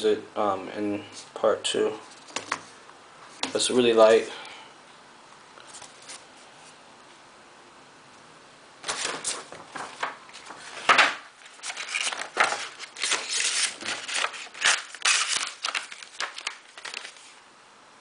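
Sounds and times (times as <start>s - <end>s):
packaging rustling: 8.8s - 17.4s
packaging clicks: 11.5s - 17.2s.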